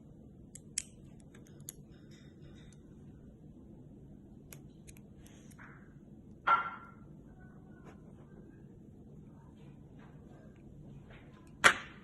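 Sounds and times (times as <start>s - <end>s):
low room hum: 0.0s - 12.0s.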